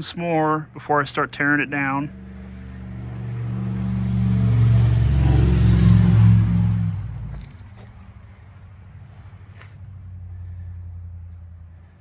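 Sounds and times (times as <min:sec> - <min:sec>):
car engine revving: 0:01.0 - 0:08.0
light metallic clicks and jingles: 0:07.2 - 0:08.2.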